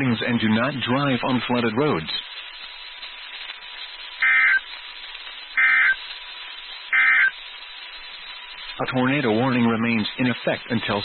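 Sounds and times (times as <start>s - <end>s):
faint radio hiss: 0.0s - 11.0s
digital data tone bursts: 4.2s - 4.8s, 5.5s - 6.2s, 6.9s - 7.6s.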